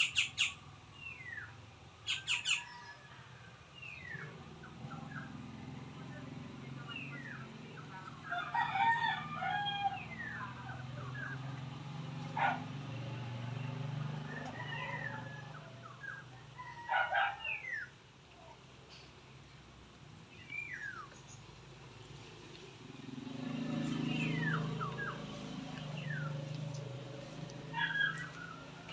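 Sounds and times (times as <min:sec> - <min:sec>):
birds chirping: 0:00.0 - 0:03.0, 0:03.7 - 0:18.0, 0:20.2 - 0:28.9
rooster crowing: 0:08.2 - 0:10.5, 0:14.1 - 0:17.1, 0:27.2 - 0:28.9.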